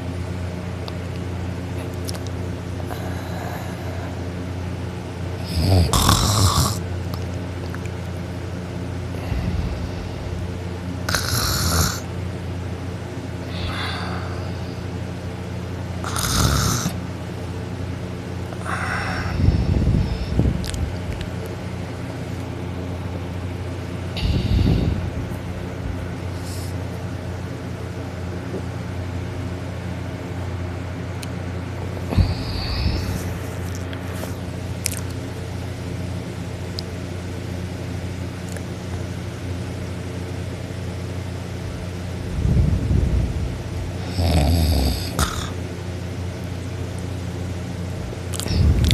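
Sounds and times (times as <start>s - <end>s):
steady low hum: 0.0s - 48.9s
person snoring: 5.4s - 6.8s, 9.1s - 12.1s, 13.5s - 14.6s, 16.0s - 17.0s, 18.6s - 20.4s, 24.2s - 25.2s, 32.0s - 33.4s, 44.0s - 45.6s.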